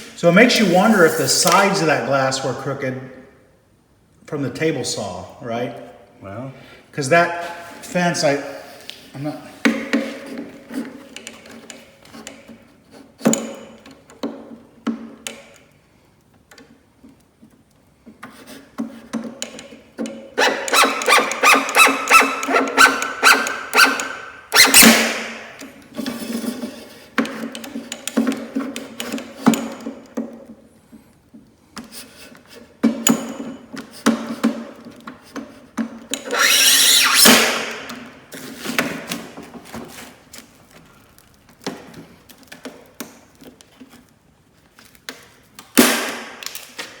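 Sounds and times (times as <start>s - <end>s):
loud sharp scrape: 0.4s - 1.8s, 20.4s - 25.5s, 36.2s - 38.1s
knife scratching acrylic sheet: 20.4s - 25.2s, 36.3s - 37.9s
knocks of sheet and tools: 20.4s - 25.5s, 45.7s - 46.8s.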